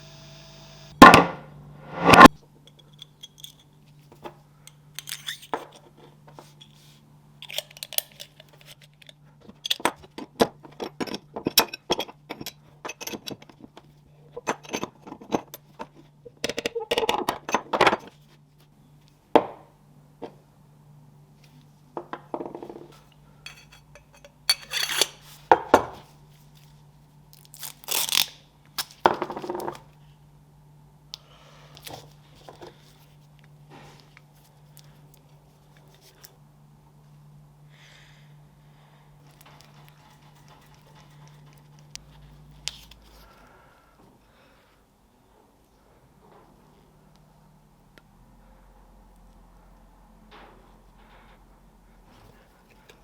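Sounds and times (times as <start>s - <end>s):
faint steady hum: 0.0s - 53.0s
metal tools clinking on workbench: 23.5s - 25.2s.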